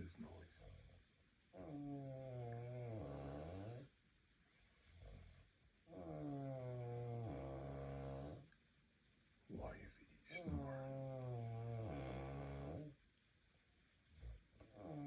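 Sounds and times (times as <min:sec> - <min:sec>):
woman snoring: 0:01.6 - 0:03.9, 0:05.9 - 0:08.4, 0:10.4 - 0:12.9, 0:14.6 - 0:15.0
faint breath: 0:04.5 - 0:05.6.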